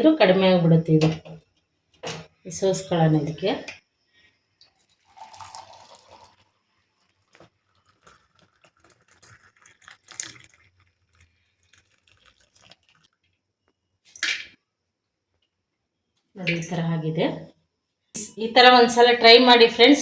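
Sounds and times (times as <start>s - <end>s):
liquid pouring and splashing: 4.6s - 13.4s.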